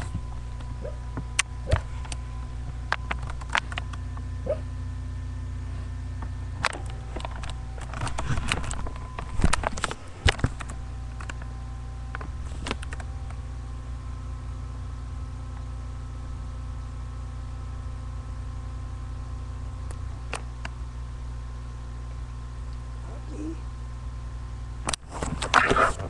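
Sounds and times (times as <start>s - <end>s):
steady low hum: 0.0s - 26.0s
sleeping dog yipping: 0.8s - 1.8s, 4.4s - 4.7s.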